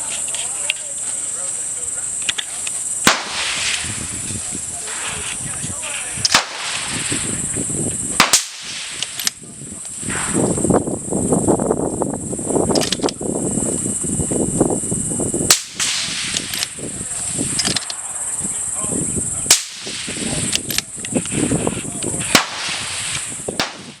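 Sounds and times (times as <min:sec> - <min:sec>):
high insect drone: 0:00.0 - 0:24.0
suppressed rifle shots: 0:03.0 - 0:03.9, 0:06.3 - 0:07.0, 0:08.2 - 0:09.4, 0:22.3 - 0:23.0.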